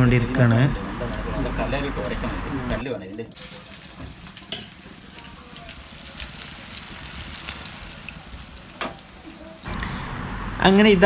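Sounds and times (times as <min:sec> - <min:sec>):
fish sizzling in hot oil: 0:03.3 - 0:09.7.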